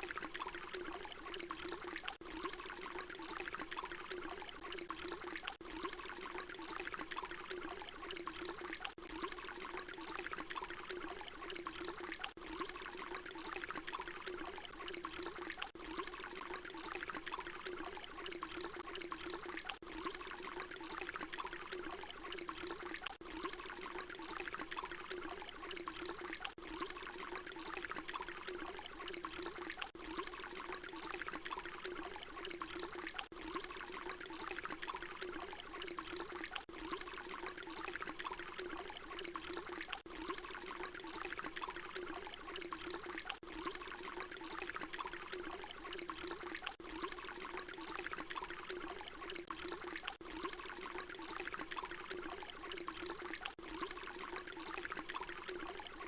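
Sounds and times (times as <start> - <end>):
water pouring: 0.0 - 56.0.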